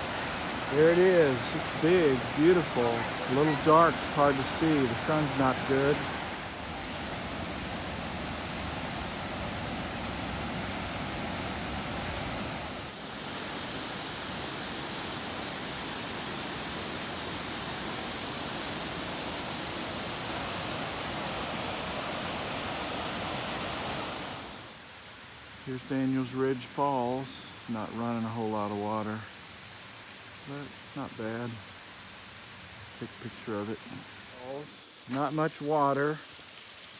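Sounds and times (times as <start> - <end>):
waterfall roaring: 0.0 - 24.8, 32.4 - 36.5.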